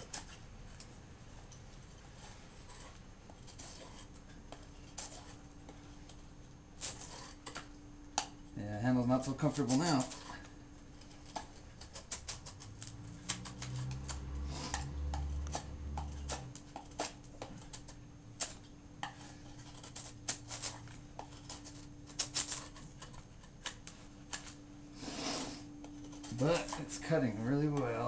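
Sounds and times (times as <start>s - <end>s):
knife carving wood: 0.0s - 8.4s, 9.2s - 28.0s
faint steady hum: 0.0s - 28.0s
wood chips clicking off: 9.0s - 10.4s.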